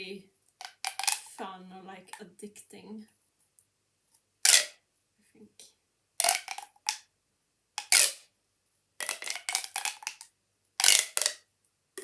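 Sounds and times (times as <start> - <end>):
plastic pop tube crackling: 0.5 - 1.5, 4.4 - 4.8, 6.2 - 7.1, 7.8 - 8.3, 9.0 - 12.0.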